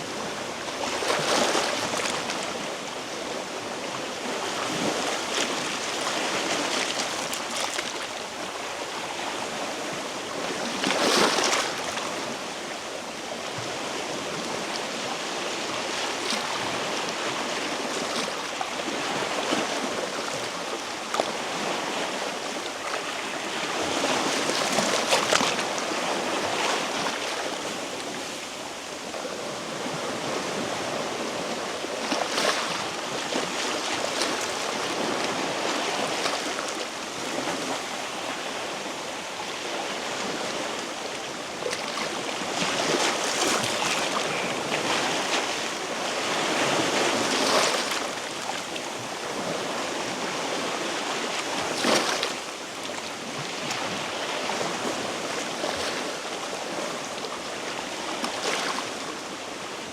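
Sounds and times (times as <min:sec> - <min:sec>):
sea waves washing against rocks: 0:13.4 - 0:59.9.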